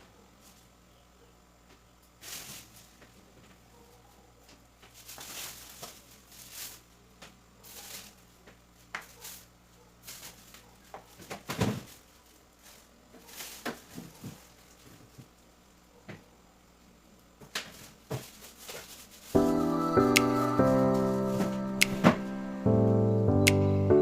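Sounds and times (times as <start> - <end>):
rustling and light clicks: 1.7 - 16.3, 17.2 - 19.6.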